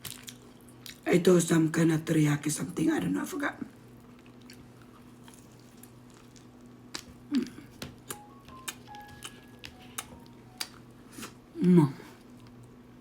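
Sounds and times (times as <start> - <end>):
biting and chewing crunches: 4.0 - 11.4.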